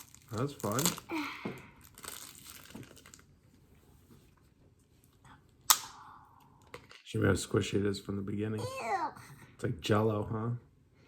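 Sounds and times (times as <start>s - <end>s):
faint crackly handling noise: 0.0s - 5.2s.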